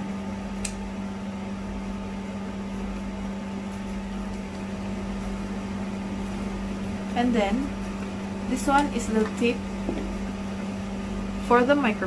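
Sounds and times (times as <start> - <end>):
electric fan humming: 0.0 - 12.0
light click: 0.6 - 0.8.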